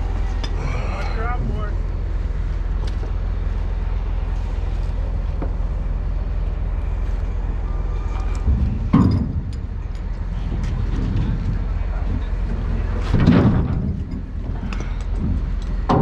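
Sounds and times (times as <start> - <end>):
diesel engine rumbling: 0.0 - 16.0.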